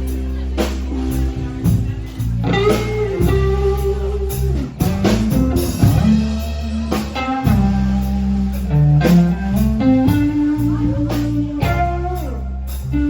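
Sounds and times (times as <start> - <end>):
bass notes: 0.0 - 13.0
drums: 0.0 - 13.0
electric guitar notes: 0.0 - 13.0.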